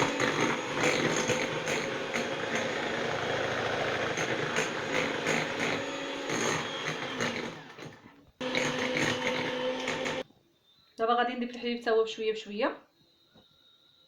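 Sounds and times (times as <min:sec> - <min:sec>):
electric mixer beating batter: 0:00.0 - 0:10.2.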